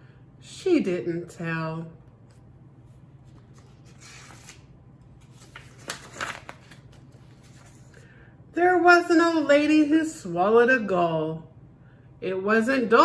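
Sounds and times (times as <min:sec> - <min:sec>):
paper page turning: 0:02.2 - 0:08.0.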